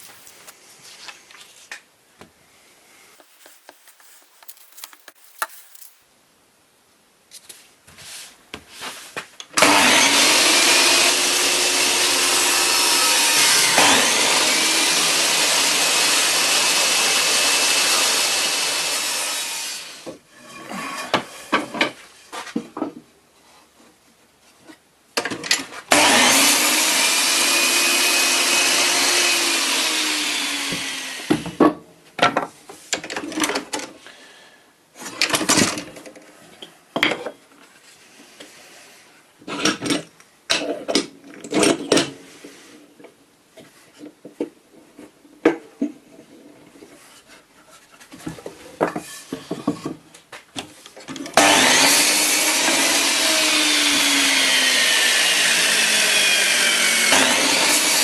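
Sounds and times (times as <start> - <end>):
power tool running: 0.0 - 0.5, 9.6 - 20.0, 25.9 - 31.5, 51.4 - 58.0
wood knocks and scrapes: 3.2 - 6.0, 20.3 - 23.1, 45.8 - 51.2.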